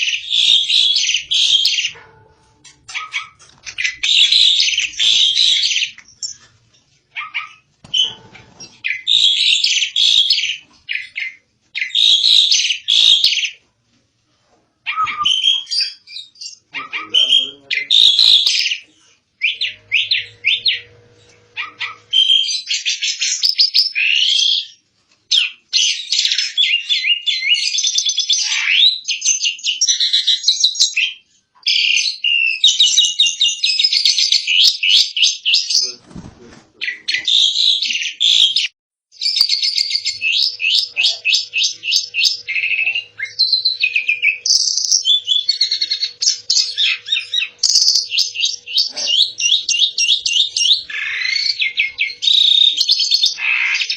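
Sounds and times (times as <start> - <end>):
starling chattering song: 0.0 - 6.5, 7.2 - 13.6, 14.9 - 24.4, 36.8 - 53.9.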